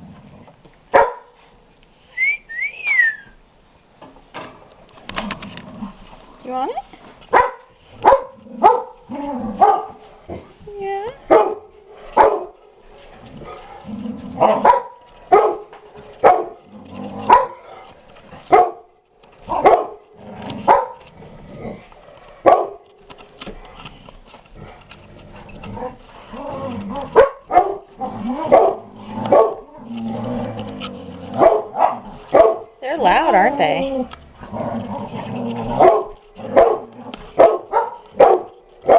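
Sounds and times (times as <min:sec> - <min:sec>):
dogs barking: 0:00.9 - 0:01.4, 0:07.3 - 0:10.0, 0:11.3 - 0:12.8, 0:14.4 - 0:16.6, 0:17.2 - 0:17.7, 0:18.4 - 0:18.9, 0:19.5 - 0:21.1, 0:22.4 - 0:22.9, 0:27.0 - 0:29.7, 0:31.3 - 0:33.8, 0:35.8 - 0:38.9.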